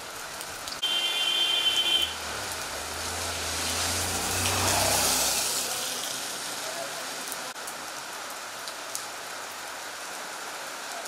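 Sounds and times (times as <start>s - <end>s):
vehicle passing on wet road: 0.0s - 10.7s
heavy rain falling: 0.0s - 11.0s
vehicle horn: 0.8s - 2.2s.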